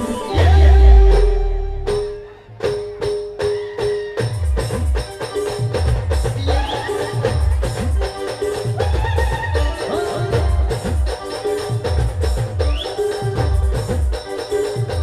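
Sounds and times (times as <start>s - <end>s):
brass and drum band: 0.0s - 14.4s
jingling percussion: 0.0s - 15.0s
pounding low drum strokes: 0.4s - 2.3s.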